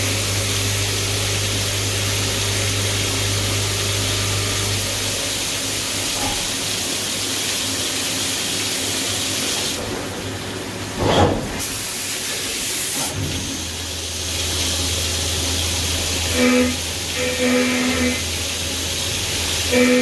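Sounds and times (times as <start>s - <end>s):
coolant spraying hiss: 0.0s - 20.0s
milling machine running: 11.6s - 20.0s.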